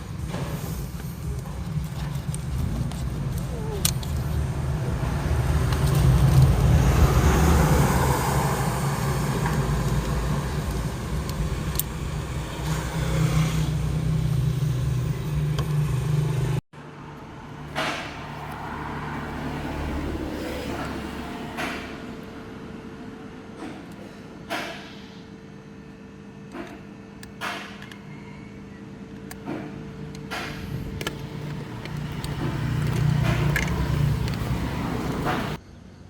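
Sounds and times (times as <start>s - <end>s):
car engine humming: 0.0s - 23.4s, 29.4s - 35.6s.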